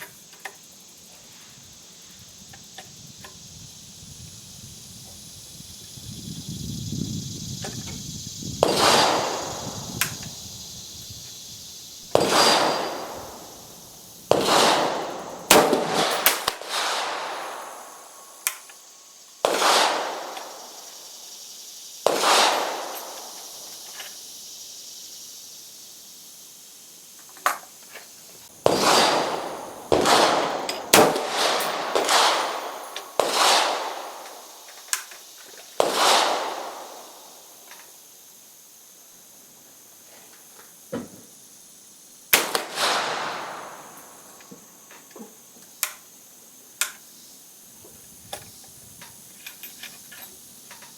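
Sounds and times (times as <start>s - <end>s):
gunshots with echo: 8.6s - 10.2s, 12.1s - 18.3s, 19.4s - 20.9s, 22.1s - 23.5s, 28.6s - 34.6s, 35.8s - 37.4s, 42.4s - 44.3s
faint gunshot cracks: 12.1s - 13.7s, 14.3s - 17.8s, 28.6s - 34.5s.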